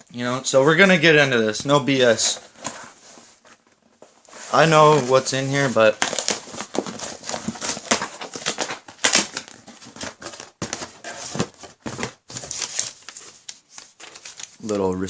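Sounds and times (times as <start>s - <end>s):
packaging crinkling and tearing: 4.5s - 14.6s.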